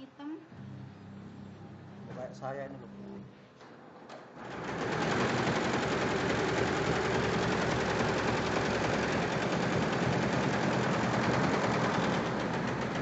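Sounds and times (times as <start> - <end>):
embroidery machine stitching: 4.4 - 13.0.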